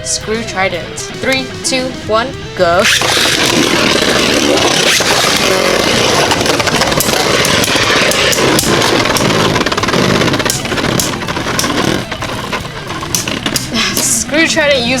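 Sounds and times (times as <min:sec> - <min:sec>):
spinning tops whirring and grinding: 0:00.0 - 0:15.0
spinning tops clacking: 0:02.8 - 0:14.3.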